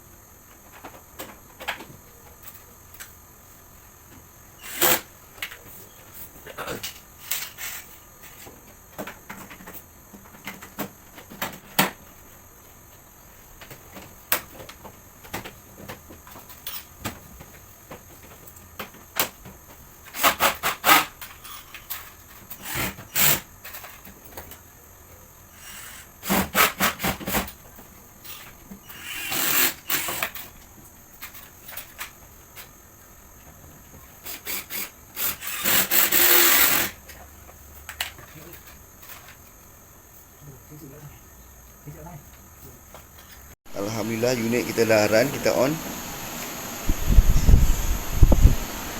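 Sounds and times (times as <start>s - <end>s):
rasping tool bursts: 28.9s - 30.4s, 34.3s - 37.0s
clicks and knocks of tools: 37.1s - 39.6s.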